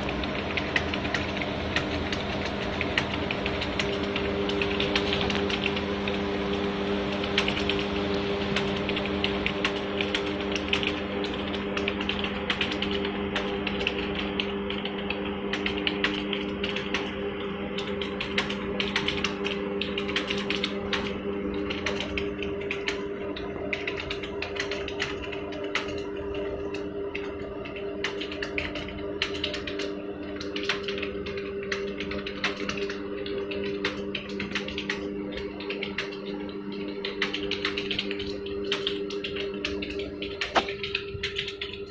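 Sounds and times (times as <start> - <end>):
steady low hum: 0.0 - 41.9
keyboard typing: 8.6 - 17.1, 17.8 - 21.1, 40.4 - 41.8.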